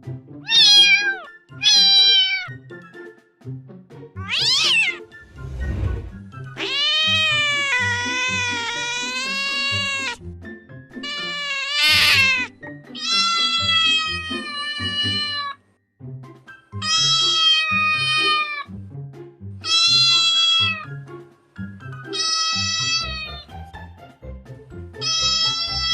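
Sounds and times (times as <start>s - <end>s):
kitten meowing: 0.5s - 2.6s, 4.2s - 5.1s, 6.6s - 10.2s, 11.0s - 15.6s, 16.8s - 18.7s, 19.6s - 20.9s, 22.1s - 23.4s, 25.0s - 25.9s.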